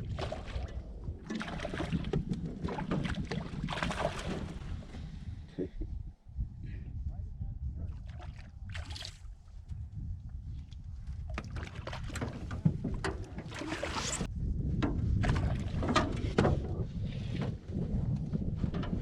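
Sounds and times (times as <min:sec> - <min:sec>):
water splashing against boat: 0:00.0 - 0:05.2, 0:08.0 - 0:09.3, 0:11.2 - 0:14.3, 0:15.2 - 0:16.8
wind buffeting microphone: 0:00.0 - 0:19.0.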